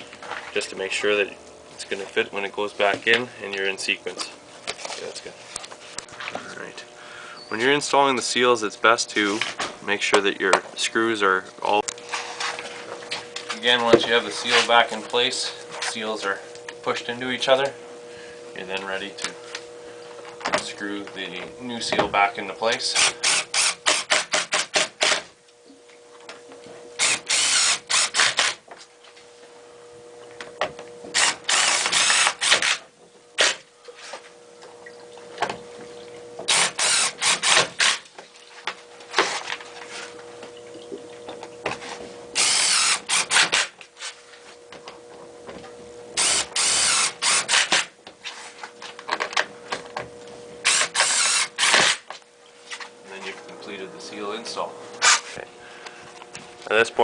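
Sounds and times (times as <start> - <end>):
power drill driving screws: 23.0 - 25.2, 27.0 - 28.6, 31.1 - 33.6, 36.5 - 38.1, 42.4 - 43.8, 46.2 - 47.9, 50.6 - 52.1.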